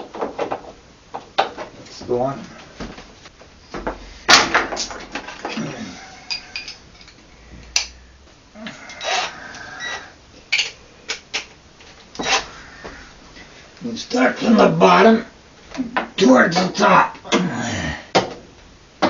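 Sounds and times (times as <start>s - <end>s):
metal tools clinking and clattering: 5.1s - 7.2s.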